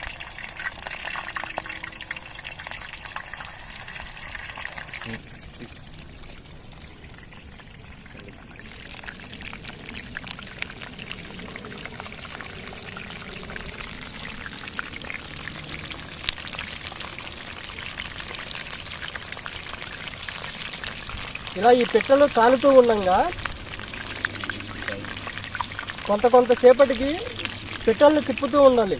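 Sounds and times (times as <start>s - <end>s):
meat deep-frying in oil: 0.0s - 28.9s
sizzle with crackles and pops: 0.0s - 28.9s.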